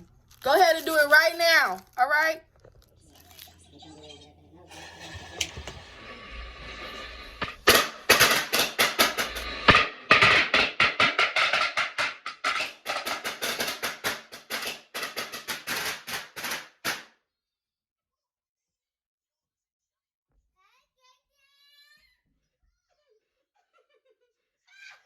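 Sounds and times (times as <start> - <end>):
firecrackers banging: 3.3 - 17.0.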